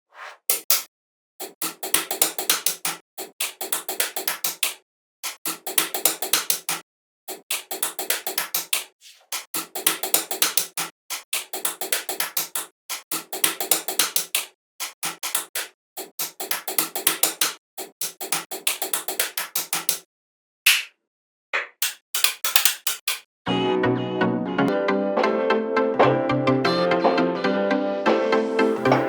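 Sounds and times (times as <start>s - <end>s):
rapid sharp clicks: 1.4s - 20.0s.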